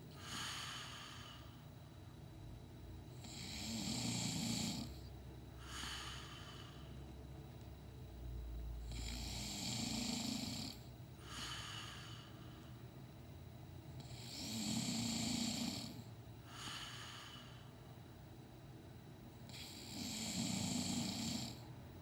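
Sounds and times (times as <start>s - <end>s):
man snoring: 3.2s - 5.0s, 8.8s - 12.3s, 14.0s - 17.6s, 19.5s - 21.7s.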